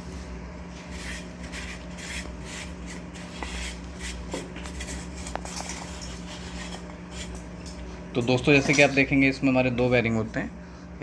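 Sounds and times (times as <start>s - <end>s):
steady low hum: 0.0s - 11.0s
cloth or brush rubbing strokes: 0.7s - 5.2s.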